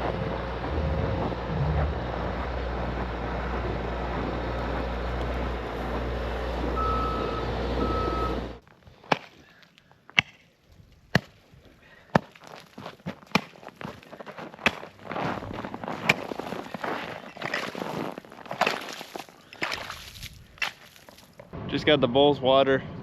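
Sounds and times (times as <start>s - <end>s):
vehicle engine running: 0.0s - 8.6s
short beeps: 6.8s - 8.4s.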